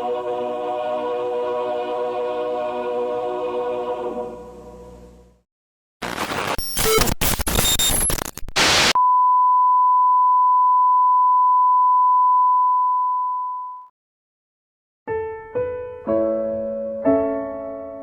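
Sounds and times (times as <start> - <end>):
loud television static: 6.0 - 9.0.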